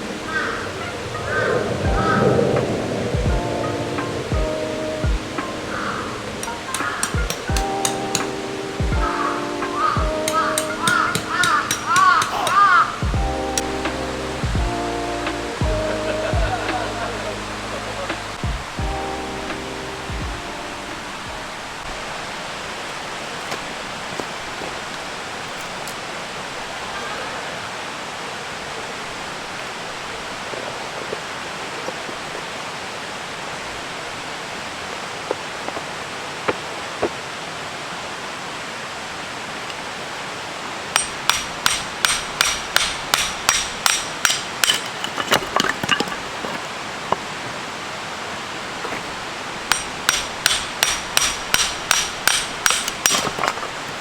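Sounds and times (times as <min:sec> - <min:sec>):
steady rushing background: 0:00.0 - 0:16.5, 0:17.1 - 0:21.8
hammer striking metal tent pegs: 0:06.4 - 0:09.0, 0:09.6 - 0:13.8, 0:41.0 - 0:46.6, 0:49.7 - 0:54.0.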